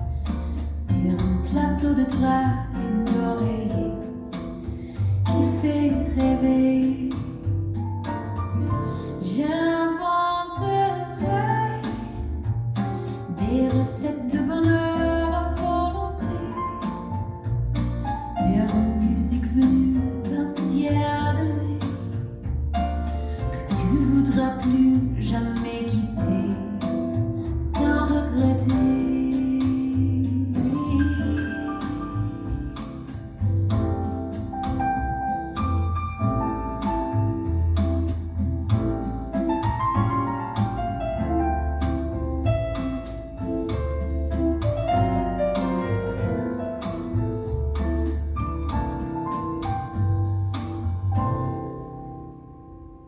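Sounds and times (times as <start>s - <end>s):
guitar accompaniment: 0.0s - 53.0s
woman singing: 0.6s - 4.3s, 5.3s - 7.5s, 9.1s - 12.3s, 13.3s - 17.1s, 18.3s - 22.1s, 23.5s - 32.8s.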